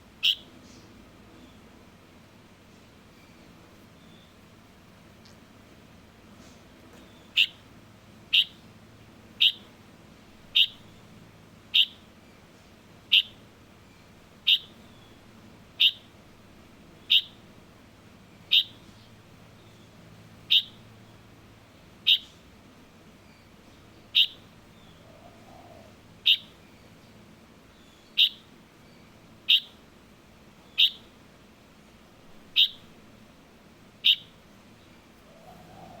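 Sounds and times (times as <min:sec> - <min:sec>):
fledgling bird chirping: 0:00.2 - 0:01.8, 0:03.1 - 0:04.5, 0:06.4 - 0:09.8, 0:10.4 - 0:12.5, 0:13.1 - 0:16.2, 0:16.8 - 0:17.5, 0:18.3 - 0:21.4, 0:22.0 - 0:22.4, 0:23.2 - 0:29.8, 0:30.5 - 0:31.2, 0:32.4 - 0:33.0, 0:34.0 - 0:36.0.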